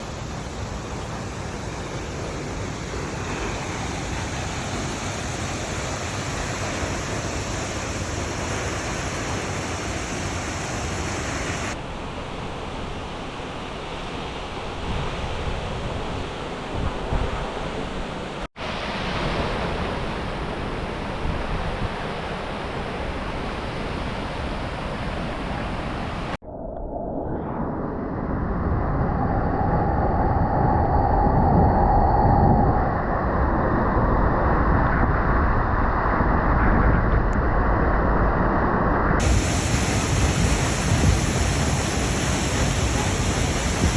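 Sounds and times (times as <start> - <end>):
waterfall rushing: 39.2 - 43.9.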